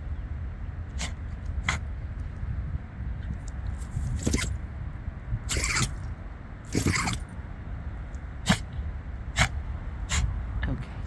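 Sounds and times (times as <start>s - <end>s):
pet sneezing: 5.5s - 6.0s, 6.7s - 7.3s, 9.4s - 10.3s.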